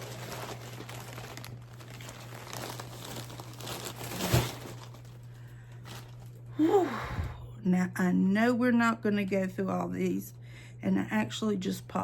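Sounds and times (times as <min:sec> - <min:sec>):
bag crinkling and rustling: 0:00.0 - 0:06.5
crackle and thump: 0:00.0 - 0:06.5.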